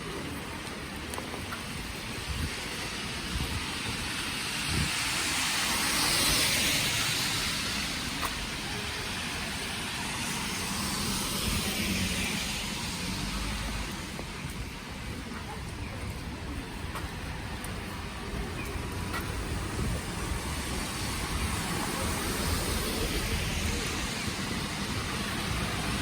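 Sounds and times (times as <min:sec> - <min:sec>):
car passing: 0:02.5 - 0:15.1, 0:19.1 - 0:26.0.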